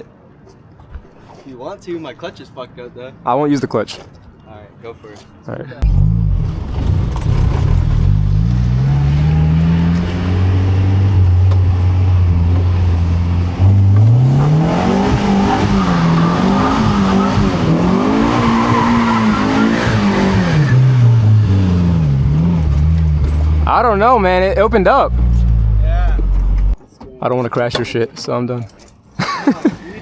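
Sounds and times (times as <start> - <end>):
car engine revving: 5.8 - 26.8
tyres squealing: 8.4 - 26.7.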